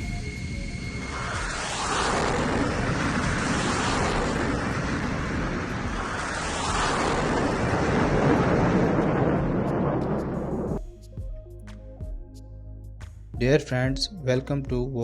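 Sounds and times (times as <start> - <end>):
steady rushing wind and surf: 0.0 - 10.8.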